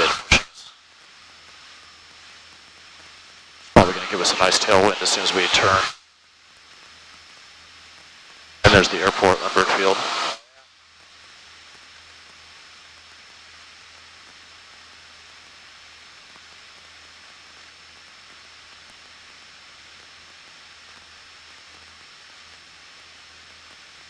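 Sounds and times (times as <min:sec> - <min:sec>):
faint hiss: 0:00.0 - 0:06.0, 0:08.3 - 0:12.4
low hum: 0:03.6 - 0:05.9, 0:08.6 - 0:10.6.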